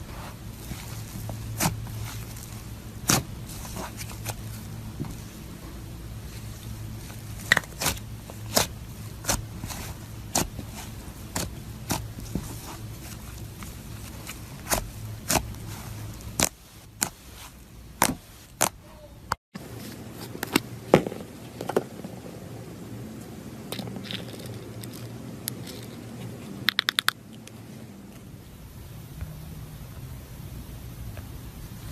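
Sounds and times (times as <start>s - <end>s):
crunchy slime crackling and popping: 6.3s - 17.2s.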